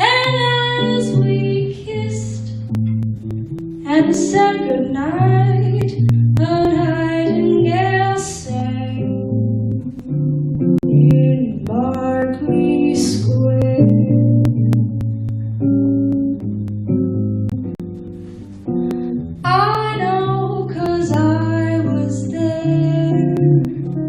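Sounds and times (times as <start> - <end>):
woman singing: 0.0 - 2.7, 3.8 - 15.4, 19.4 - 24.0
acoustic guitar playing chords: 0.0 - 24.0.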